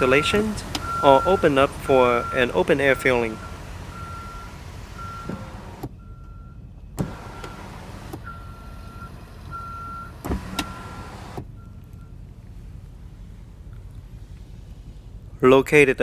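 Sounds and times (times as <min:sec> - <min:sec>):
car warning chime beeping: 0:00.0 - 0:12.2
low steady rumble: 0:00.0 - 0:16.0.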